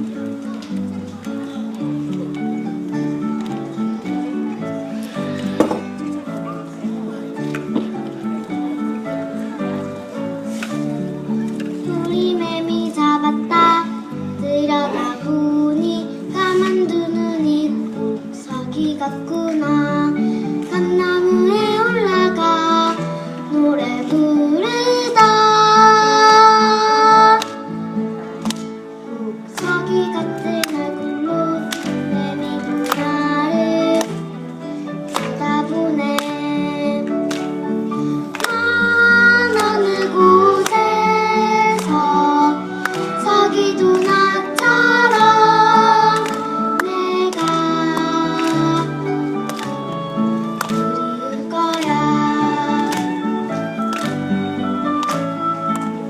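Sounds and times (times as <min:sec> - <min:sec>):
acoustic guitar: 0:00.0 - 0:56.0
person singing: 0:11.8 - 0:27.6, 0:29.1 - 0:34.3, 0:38.2 - 0:49.6, 0:50.7 - 0:53.5
instrumental music with steady beat: 0:42.6 - 0:56.0.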